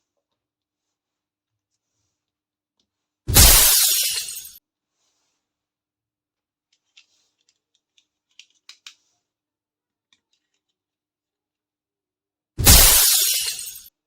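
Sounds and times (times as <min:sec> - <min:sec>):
loud crash: 0:03.3 - 0:04.4, 0:12.6 - 0:13.8
faint small clicks and taps: 0:06.7 - 0:09.2, 0:10.0 - 0:11.0.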